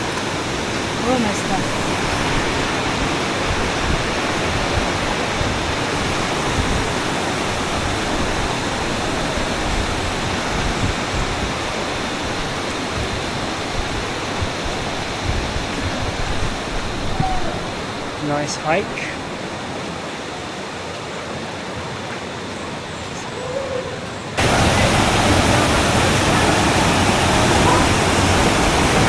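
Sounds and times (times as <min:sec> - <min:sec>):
water rushing: 0:00.0 - 0:29.0.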